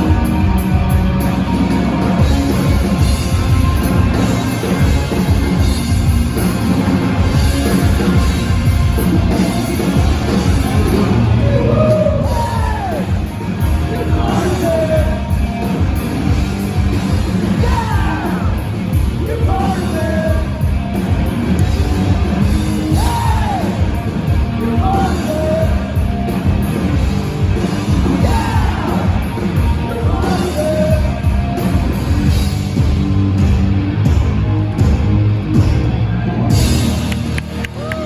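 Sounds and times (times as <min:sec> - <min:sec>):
live rock band playing: 0:00.0 - 0:38.0
person singing and shouting: 0:17.5 - 0:20.6.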